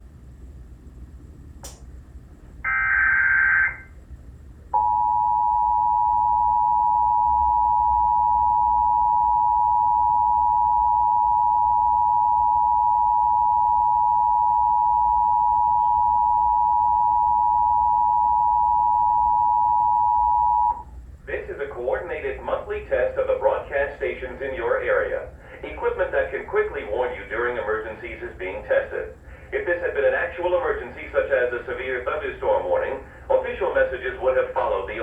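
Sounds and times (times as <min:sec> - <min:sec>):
click: 0:01.6 - 0:01.9
screechy digital data tones: 0:02.7 - 0:03.9
two-tone attention signal: 0:02.7 - 0:03.9, 0:04.8 - 0:20.8.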